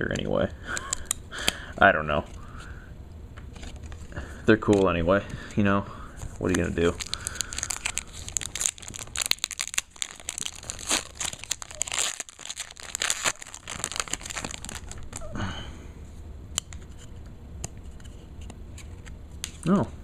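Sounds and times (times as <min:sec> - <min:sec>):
trading cards crinkling and tearing: 0:06.2 - 0:15.3.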